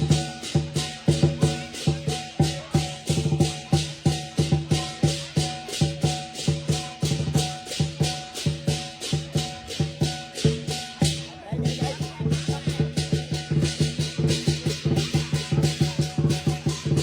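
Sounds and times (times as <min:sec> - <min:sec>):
booming drum: 0:00.0 - 0:17.0
cymbals clashing: 0:00.0 - 0:17.0.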